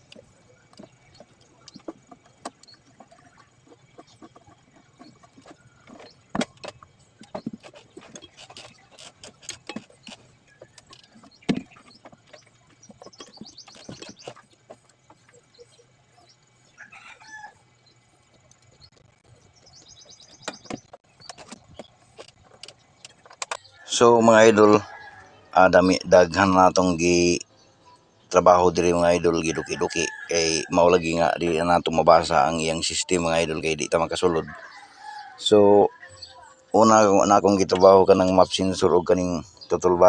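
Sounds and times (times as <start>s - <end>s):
hand tools clicking and knocking: 4.2s - 15.0s
chicken calling: 16.7s - 17.6s, 23.7s - 26.0s, 32.2s - 36.6s.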